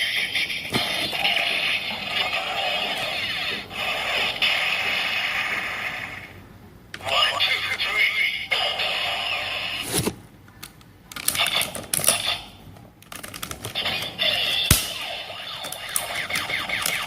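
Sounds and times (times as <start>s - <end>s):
toy electronic sound effects and music: 11.3s - 12.6s, 13.7s - 17.0s.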